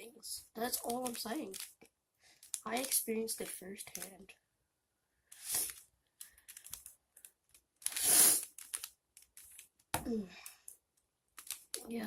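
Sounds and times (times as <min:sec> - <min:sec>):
plastic puzzle cube clicking: 0:00.8 - 0:01.8, 0:02.4 - 0:04.2, 0:05.3 - 0:09.9, 0:11.4 - 0:11.8.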